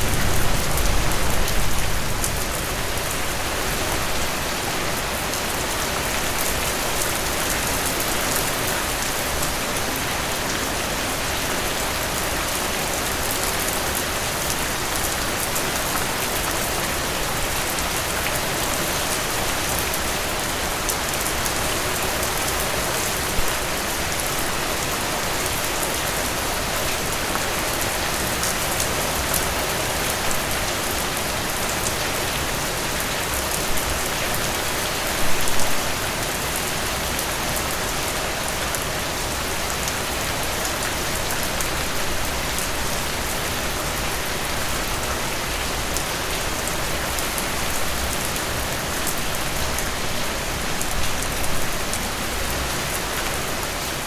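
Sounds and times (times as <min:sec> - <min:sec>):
loud hit: 0:00.0 - 0:03.7
heavy rain falling: 0:00.0 - 0:54.0.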